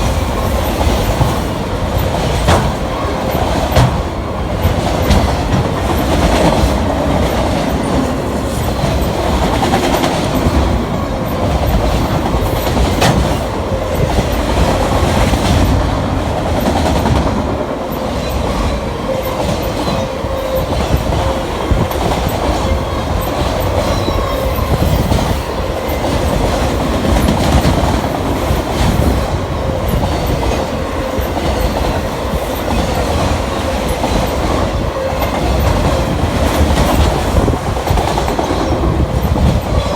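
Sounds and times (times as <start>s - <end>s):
steel wheels clacking over rail joints: 0.0s - 17.6s
freight train rumbling past: 0.0s - 39.9s.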